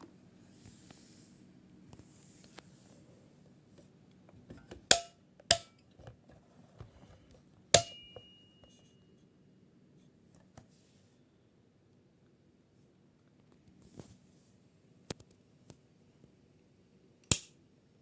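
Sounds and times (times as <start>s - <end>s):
sharp metallic knocks: 7.8s - 8.4s.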